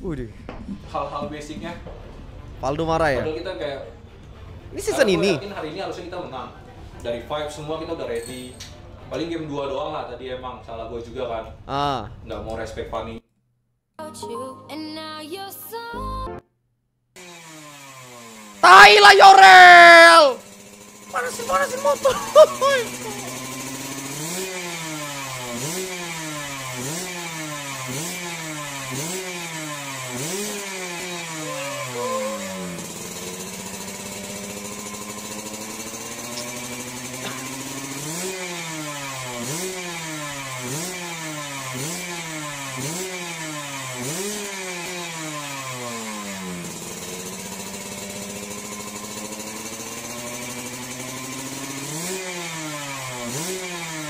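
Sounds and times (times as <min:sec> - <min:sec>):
motorcycle engine revving: 0:17.2 - 0:54.0
motorcycle engine idling: 0:20.2 - 0:54.0.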